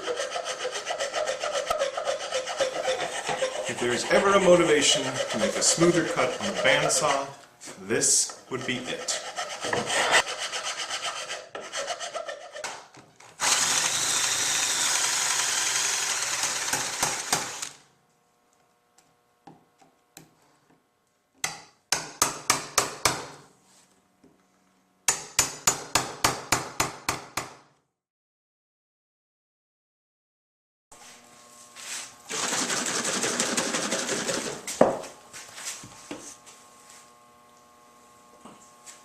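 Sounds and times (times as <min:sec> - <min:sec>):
rasp strokes on wood: 0:00.0 - 0:07.4, 0:08.1 - 0:12.7.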